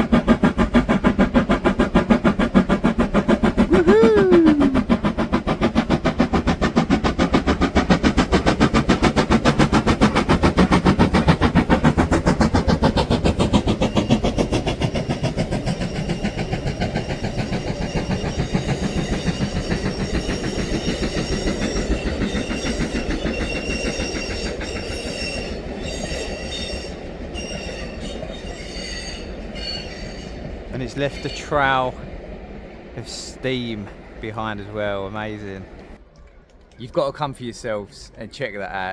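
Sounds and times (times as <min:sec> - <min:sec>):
train clattering on rails: 0:00.0 - 0:04.0, 0:04.8 - 0:38.9
steam locomotive exhaust chuffs: 0:00.0 - 0:36.0
high wheel squeal: 0:15.6 - 0:31.8.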